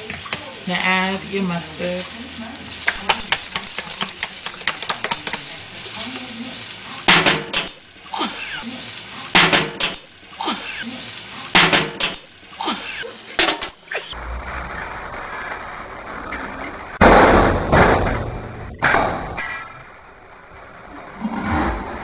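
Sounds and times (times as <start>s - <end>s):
food frying: 0.0s - 17.2s.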